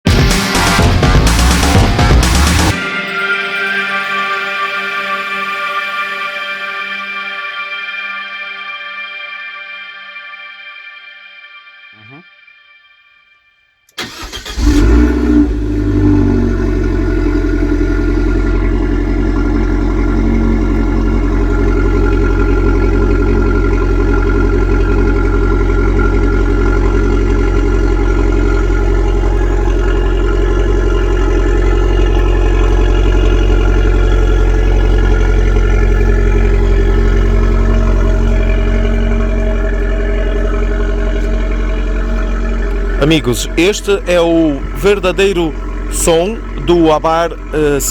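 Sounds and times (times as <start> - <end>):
car engine idling: 0.1 - 2.9, 14.0 - 47.9.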